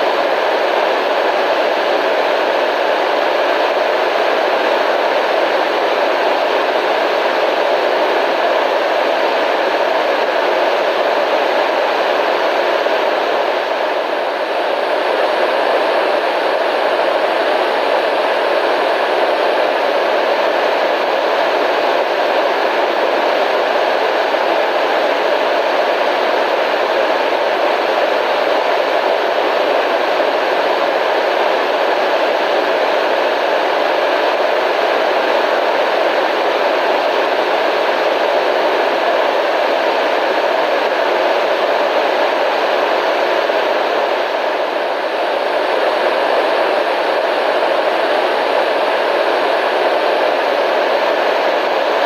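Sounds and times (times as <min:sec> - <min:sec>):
radio static hiss: 0:00.0 - 0:52.0.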